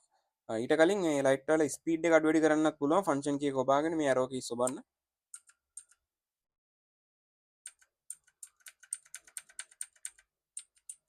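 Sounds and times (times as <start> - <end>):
mechanical keyboard keystrokes: 7.7 - 11.0.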